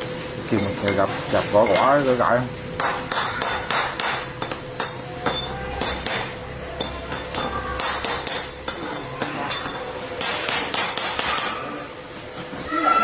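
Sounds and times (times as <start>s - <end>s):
hammer striking metal: 2.8s - 11.8s.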